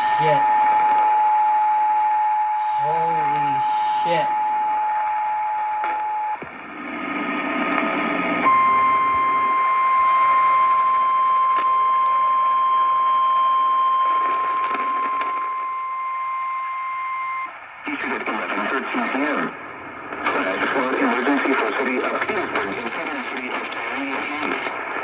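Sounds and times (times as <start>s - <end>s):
radio static hiss: 0.0s - 1.0s, 2.6s - 5.1s, 5.8s - 9.7s, 17.8s - 25.0s
weather alert beep: 0.0s - 6.4s, 8.4s - 17.5s
steady tone: 0.0s - 17.6s.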